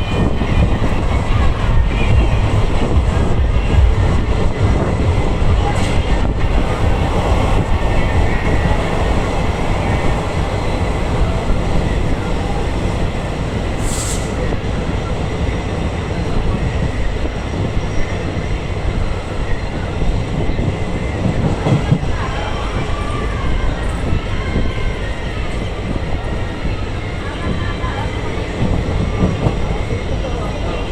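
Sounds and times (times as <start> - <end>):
train wheels rumbling on track: 0.0 - 30.9
diesel engine hum: 6.2 - 14.5
brief hiss: 13.2 - 14.5.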